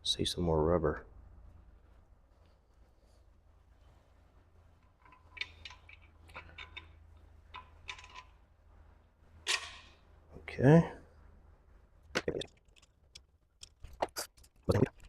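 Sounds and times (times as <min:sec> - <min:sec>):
metal engine parts clicking: 0:04.8 - 0:08.4, 0:12.2 - 0:15.0.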